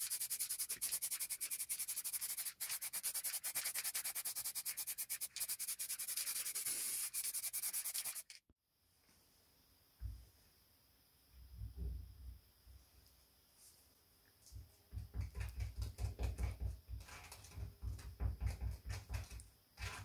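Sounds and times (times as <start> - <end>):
hand sanding strokes: 0.0 - 8.3
soft low thump: 10.0 - 10.3, 11.6 - 12.2.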